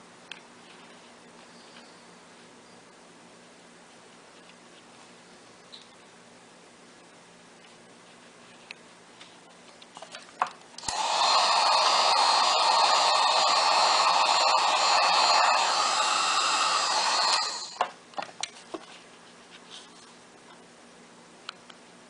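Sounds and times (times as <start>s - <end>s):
heat gun blowing: 10.8s - 17.8s.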